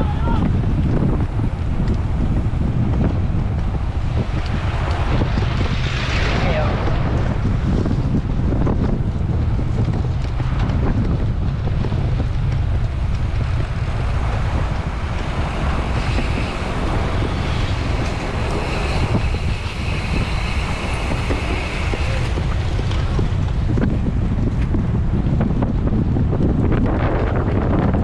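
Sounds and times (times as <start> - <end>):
wind rushing over microphone: 0.0 - 28.0
faint high whir: 15.6 - 22.4.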